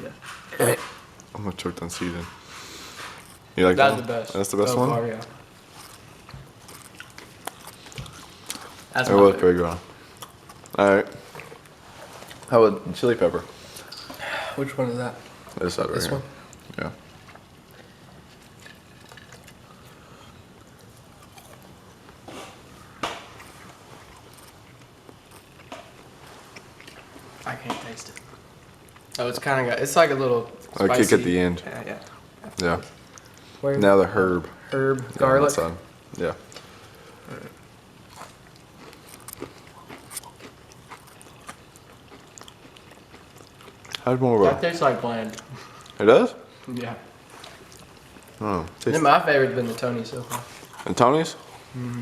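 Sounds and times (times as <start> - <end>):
person chewing fried fish: 2.1 - 3.6, 5.2 - 8.9, 9.9 - 12.5, 16.5 - 29.2, 32.0 - 33.6, 36.4 - 44.1, 45.3 - 46.0, 47.2 - 48.8.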